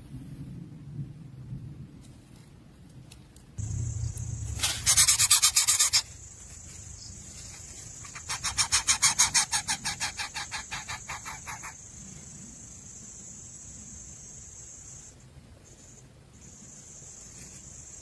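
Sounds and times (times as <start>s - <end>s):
high-pitched hiss: 3.6s - 18.0s
nestling birds begging calls: 3.7s - 12.1s.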